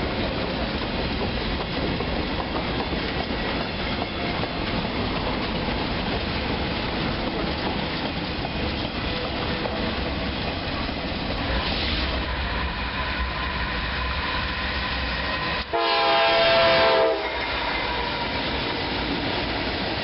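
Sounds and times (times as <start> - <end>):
train rumbling: 0.0 - 20.0
train horn chord: 15.6 - 17.4.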